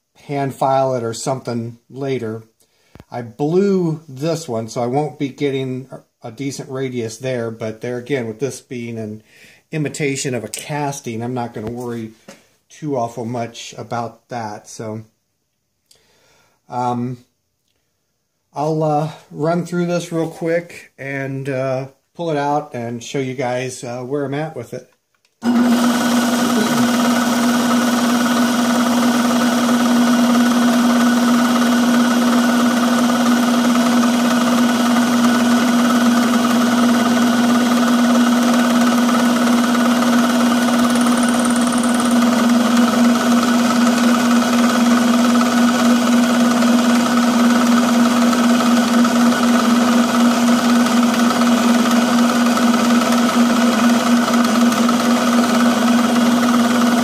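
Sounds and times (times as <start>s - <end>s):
milling machine cutting metal: 25.4s - 57.0s.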